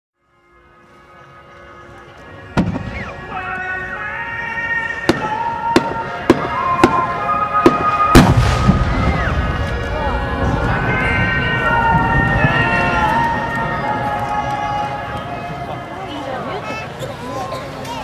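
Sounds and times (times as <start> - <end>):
music with long held notes: 0.2 - 17.0
fireworks bursting: 2.6 - 3.2, 5.0 - 12.6.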